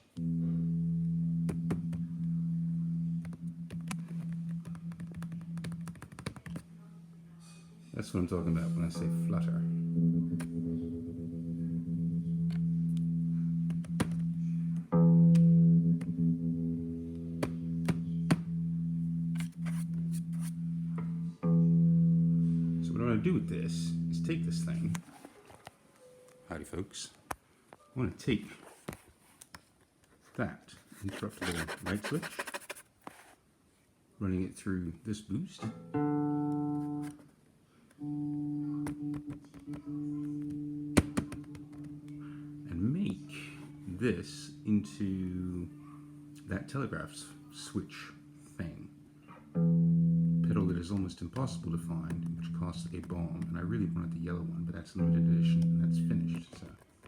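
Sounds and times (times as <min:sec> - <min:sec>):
sustained electric guitar note: 0:00.0 - 0:05.9, 0:06.7 - 0:25.0, 0:38.0 - 0:56.4.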